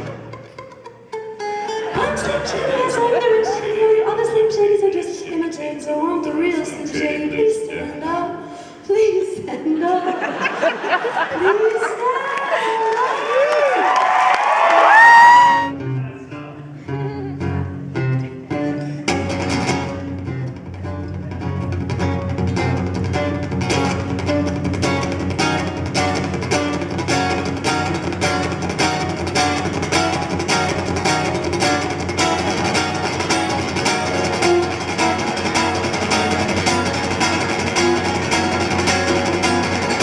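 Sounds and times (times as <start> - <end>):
guitar plucking and strumming: 0.0 - 9.6, 15.1 - 40.0.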